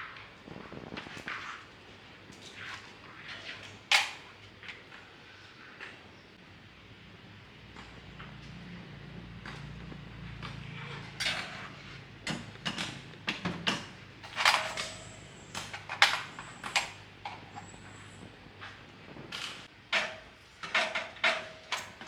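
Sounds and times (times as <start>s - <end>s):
hard parts knocking and clanking: 12.3s - 17.8s.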